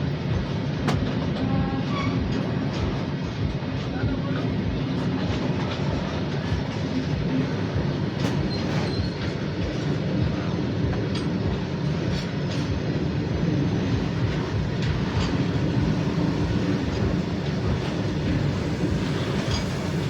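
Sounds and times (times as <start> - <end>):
freight train rumbling: 0.0 - 20.0
wheels clicking over rail joints: 0.2 - 20.0
faint wheel squeal: 8.5 - 9.4.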